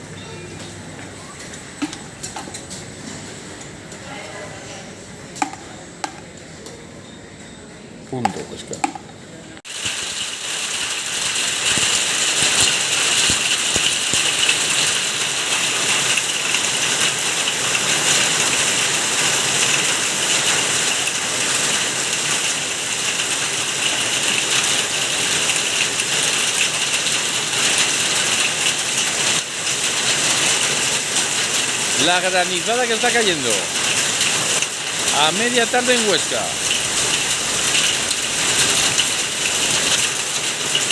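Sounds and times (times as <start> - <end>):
rain hiss: 9.6 - 40.9
hailstones rattling on hard surfaces: 9.7 - 40.9.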